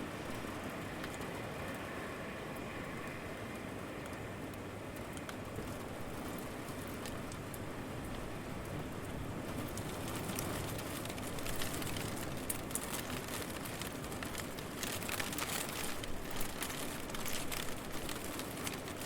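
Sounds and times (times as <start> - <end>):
rain falling: 0.0 - 19.0
raindrops ticking: 9.4 - 19.0.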